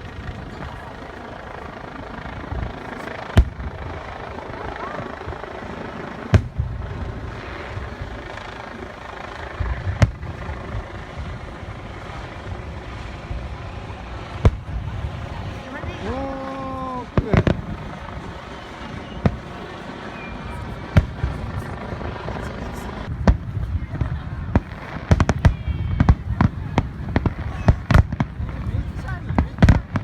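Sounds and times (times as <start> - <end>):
low rumble: 0.0 - 19.6
firework shells booming: 1.8 - 22.3, 23.0 - 30.0.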